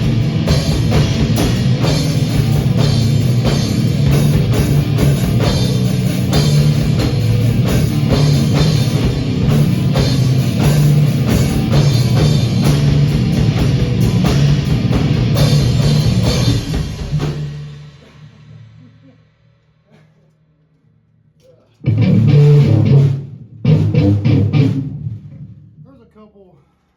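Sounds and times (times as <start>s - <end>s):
rock band playing loud: 0.0s - 18.0s, 21.8s - 25.6s.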